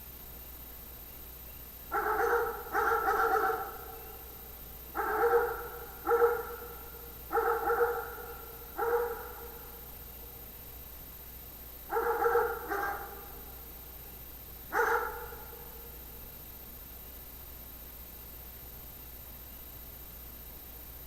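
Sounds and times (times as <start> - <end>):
voice giving bark-like calls: 1.9 - 4.2, 4.9 - 9.7, 11.9 - 13.4, 14.7 - 15.8.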